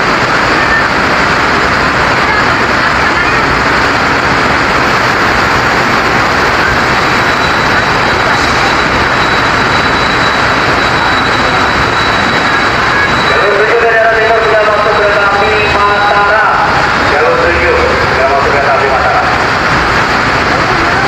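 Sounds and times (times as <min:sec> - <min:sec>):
freight train rolling: 0:00.0 - 0:21.0
rain: 0:00.0 - 0:21.0.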